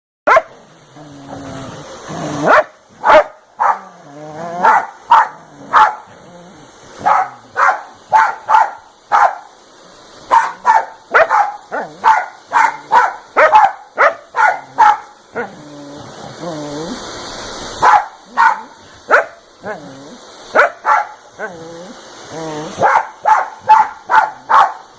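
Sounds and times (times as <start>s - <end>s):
dog barking: 0.3s - 0.6s, 2.4s - 4.0s, 4.6s - 6.2s, 7.0s - 9.5s, 10.3s - 15.5s, 17.8s - 19.8s, 20.5s - 21.5s, 22.7s - 24.9s.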